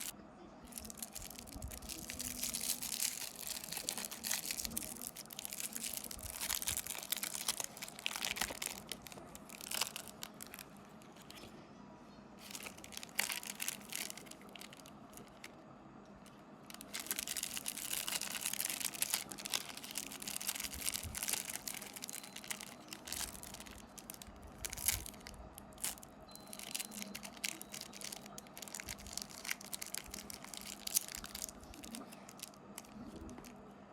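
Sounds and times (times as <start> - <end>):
wrappers crinkling and tearing: 0.7 - 11.5, 12.4 - 15.5, 16.2 - 33.5.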